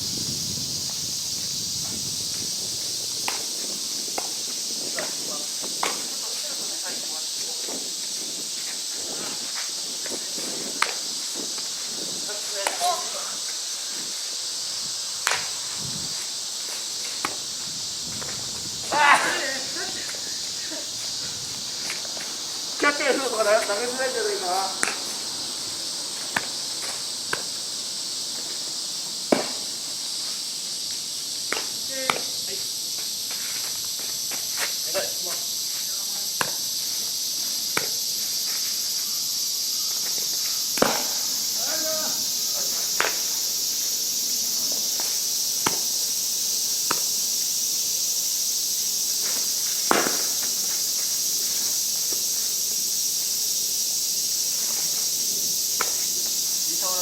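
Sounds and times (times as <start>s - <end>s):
insect chorus: 0.0s - 57.0s
bat hitting balls: 40.8s - 41.2s, 49.9s - 50.5s.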